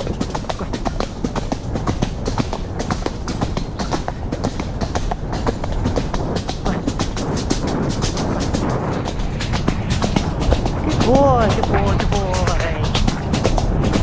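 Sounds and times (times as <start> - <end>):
horse hooves at a canter: 0.0 - 14.0
steady low rumble: 0.0 - 14.0.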